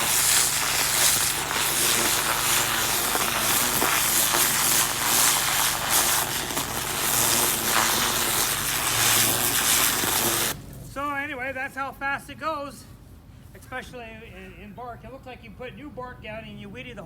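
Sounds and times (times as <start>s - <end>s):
water jet hissing into soil: 0.0s - 10.6s
pressure washer motor hum: 0.0s - 10.8s.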